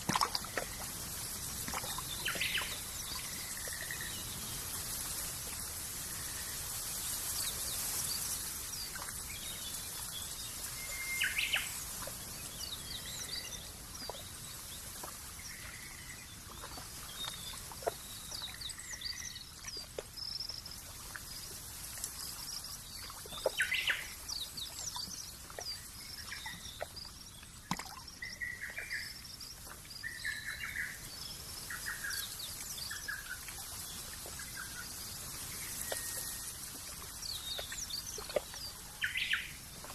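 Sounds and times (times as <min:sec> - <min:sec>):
small birds chirping: 0:00.0 - 0:39.9
steady background hiss: 0:00.7 - 0:17.7.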